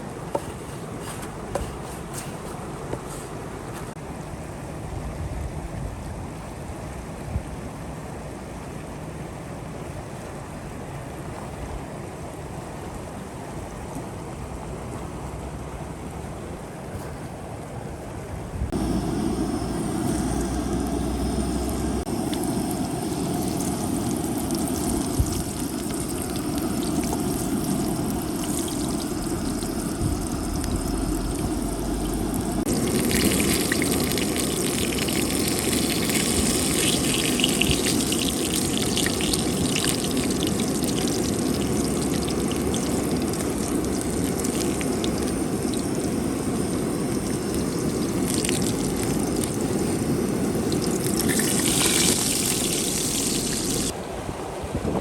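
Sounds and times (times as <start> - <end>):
oil sizzling: 18.8 - 54.0.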